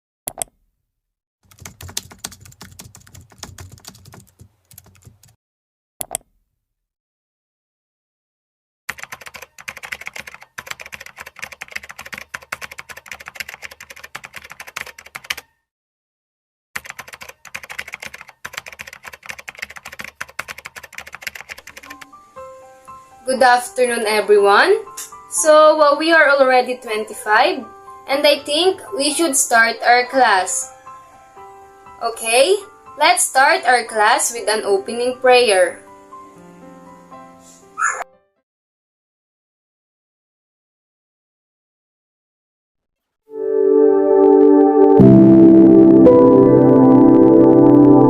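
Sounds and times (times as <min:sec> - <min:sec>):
fast typing on keyboard: 0:01.4 - 0:05.4, 0:08.9 - 0:15.5, 0:16.8 - 0:22.0.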